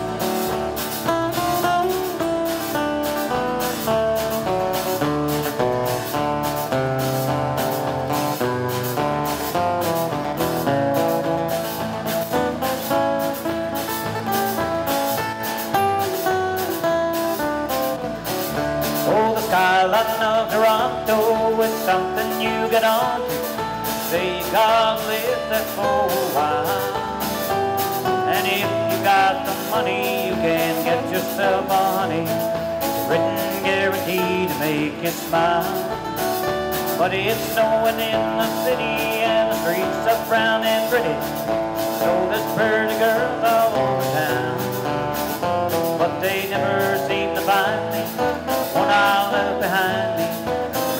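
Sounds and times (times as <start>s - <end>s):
country band playing: 0.0s - 50.9s
person singing: 18.2s - 50.9s.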